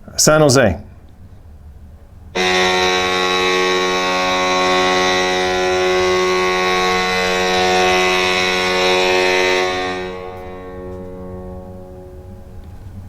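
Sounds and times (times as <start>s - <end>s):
goal horn blast: 2.4s - 12.8s.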